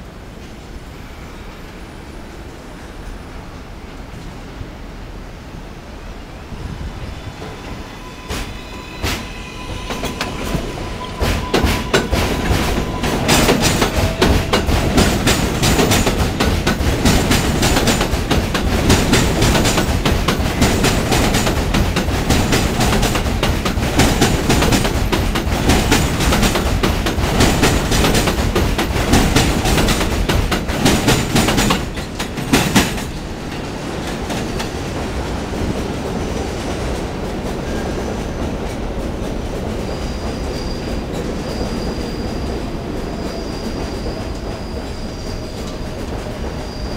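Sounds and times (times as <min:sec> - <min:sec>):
train rumble: 0:00.0 - 0:46.9
high wheel squeal: 0:07.2 - 0:16.1, 0:39.8 - 0:46.9
train wheels clattering over rails: 0:07.4 - 0:46.9.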